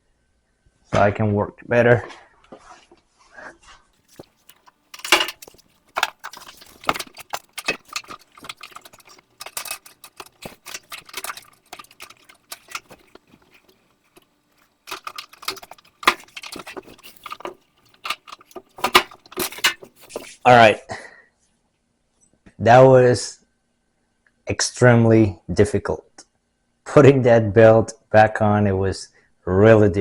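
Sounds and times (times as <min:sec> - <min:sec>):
metallic clinks and rattles: 0:04.1 - 0:20.4.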